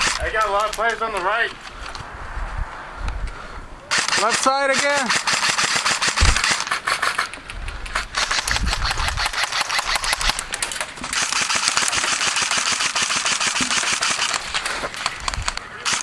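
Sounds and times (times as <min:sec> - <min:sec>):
airsoft guns firing bursts: 0:03.9 - 0:07.2, 0:11.2 - 0:16.0.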